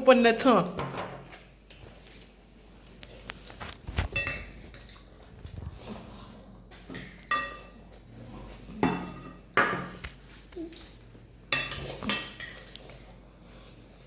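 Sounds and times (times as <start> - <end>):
cutlery clinking on plates: 4.0 - 5.1, 6.8 - 7.9, 11.5 - 13.0.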